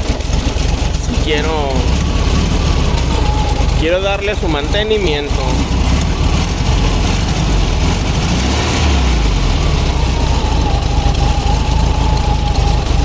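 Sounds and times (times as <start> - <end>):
car engine running: 0.0 - 13.0
thin high tone: 1.0 - 8.1.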